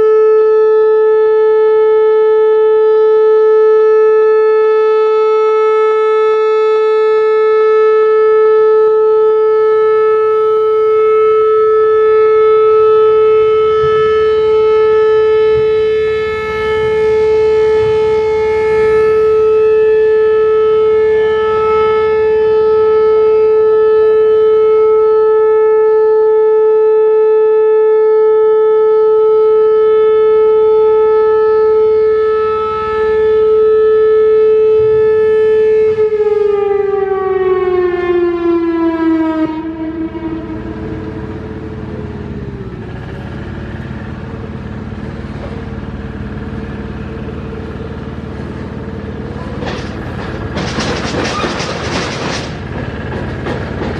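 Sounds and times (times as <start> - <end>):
rotating warning siren alert tone: 0.0 - 53.9.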